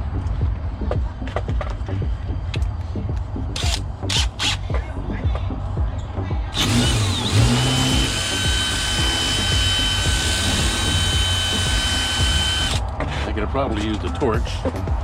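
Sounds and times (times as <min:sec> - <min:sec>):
power drill whining: 0:06.6 - 0:12.8.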